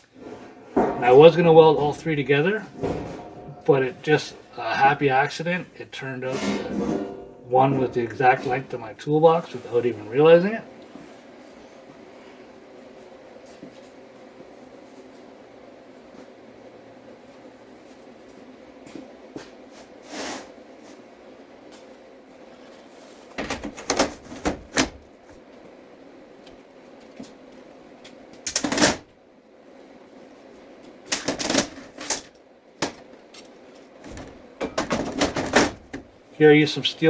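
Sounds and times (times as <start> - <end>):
low background hum: 0.0 - 37.0
clunks and clatter of objects: 0.1 - 4.5, 6.3 - 8.6, 22.6 - 25.5, 30.8 - 36.3.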